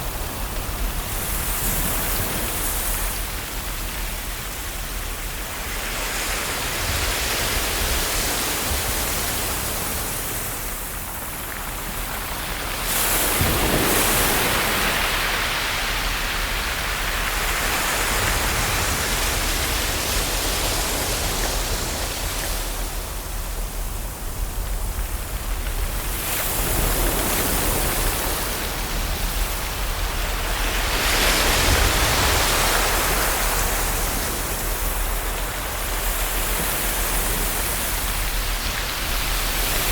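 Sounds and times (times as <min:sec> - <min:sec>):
ocean waves washing onto shore: 0:00.0 - 0:39.9.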